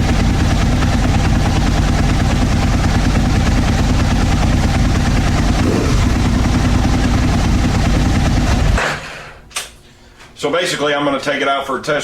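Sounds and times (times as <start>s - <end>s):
motorcycle engine idling: 0.0s - 8.8s.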